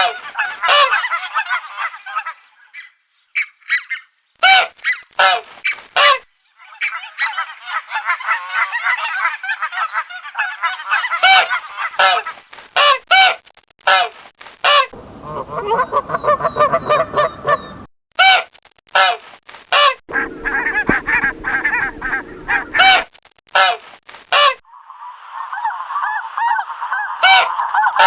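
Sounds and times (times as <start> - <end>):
geese honking: 0.0 - 1.1, 4.4 - 6.2, 11.2 - 13.3, 13.9 - 18.4, 19.0 - 28.0
background noise: 0.0 - 28.0.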